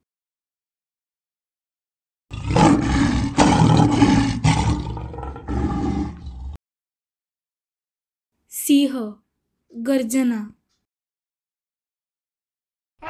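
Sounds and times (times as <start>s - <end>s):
tiger roaring: 2.3s - 6.6s.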